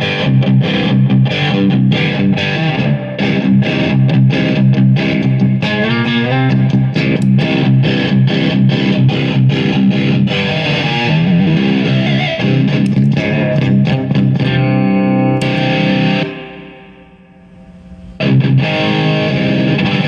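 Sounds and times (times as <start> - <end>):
overdriven electric guitar: 0.0 - 20.0.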